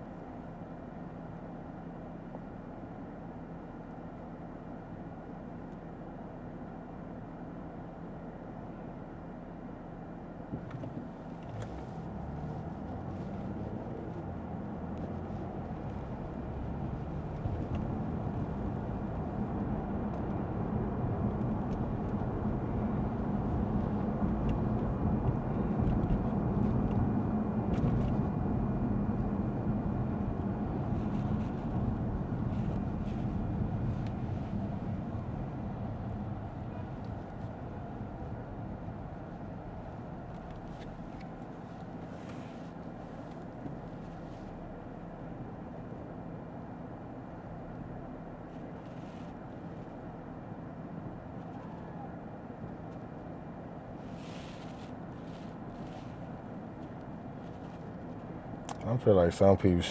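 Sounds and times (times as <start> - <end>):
car engine from inside cabin: 0.0 - 59.9
tyre noise on wet road: 53.9 - 58.9.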